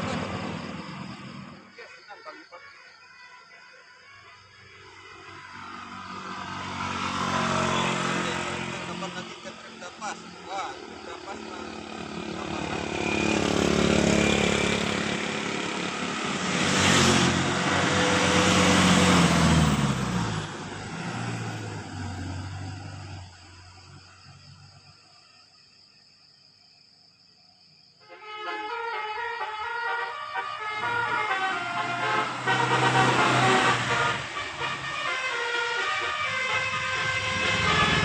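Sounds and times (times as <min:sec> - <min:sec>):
heavy vehicle engine drone: 0:00.0 - 0:01.8, 0:04.3 - 0:25.0, 0:30.4 - 0:38.0
road noise: 0:00.0 - 0:26.4, 0:27.1 - 0:38.0
bus horn playing a tune: 0:28.0 - 0:38.0.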